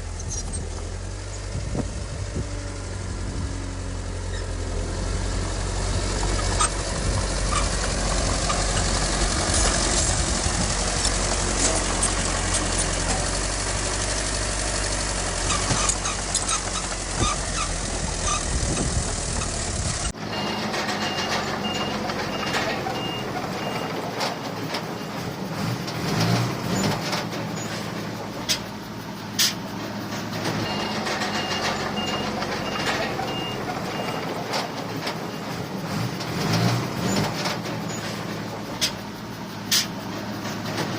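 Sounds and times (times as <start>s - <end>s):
heavy diesel machinery rumbling: 0.0s - 40.9s
metal clanks: 6.3s - 13.8s, 15.3s - 28.8s, 29.4s - 40.9s
truck reversing alarm beeping: 15.4s - 25.2s, 30.5s - 35.5s.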